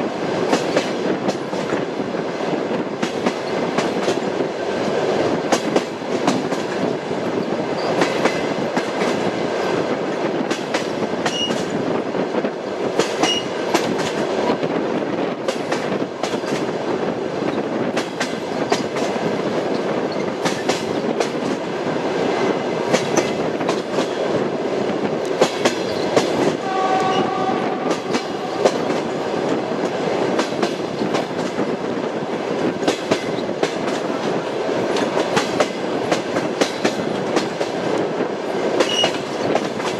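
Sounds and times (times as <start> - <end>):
train rumbling clickety-clack: 0.0 - 39.9
train horn chord: 26.6 - 29.2.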